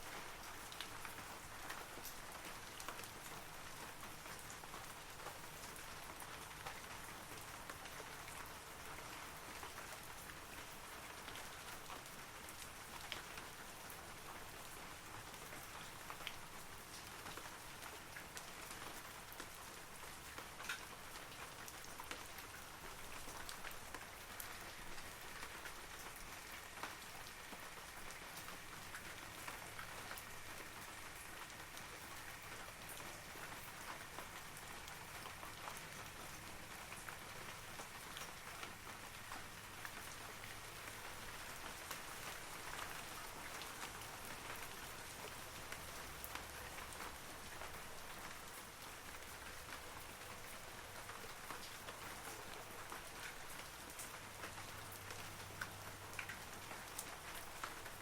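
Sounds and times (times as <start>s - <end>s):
rain falling on trees: 0.0s - 58.0s.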